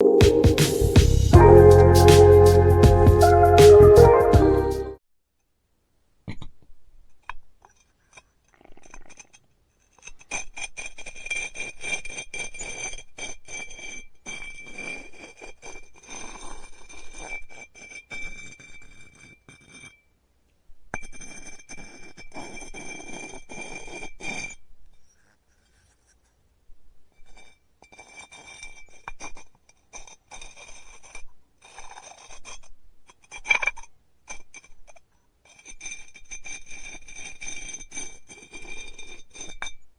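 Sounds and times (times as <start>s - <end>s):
high ringing tone: 0.0s - 3.7s
tool scraping clay: 7.2s - 20.1s, 20.9s - 26.4s, 27.2s - 39.9s.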